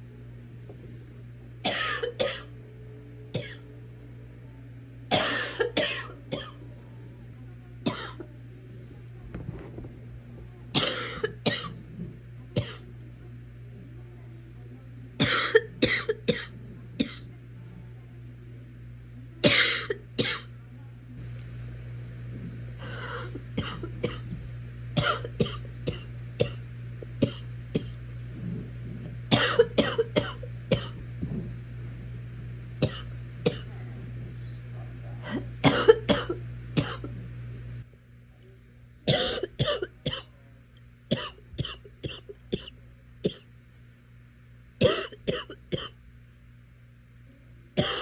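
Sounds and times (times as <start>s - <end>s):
steady low hum: 0.0s - 48.0s
girl coughing: 1.7s - 2.5s, 3.4s - 3.6s, 5.1s - 6.6s, 7.8s - 8.2s, 10.8s - 11.8s, 12.6s - 12.8s, 15.2s - 17.3s, 19.4s - 20.5s, 22.8s - 24.3s, 25.0s - 26.6s, 27.2s - 28.0s, 29.3s - 31.0s, 32.8s - 33.7s, 35.2s - 37.1s, 39.1s - 40.3s, 41.1s - 43.4s, 44.8s - 46.0s, 47.8s - 48.0s.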